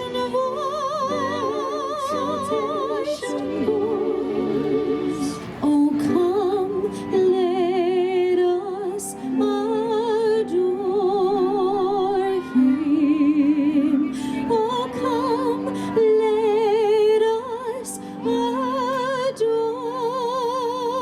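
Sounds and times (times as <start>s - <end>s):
group singing carol in harmony: 0.0s - 21.0s.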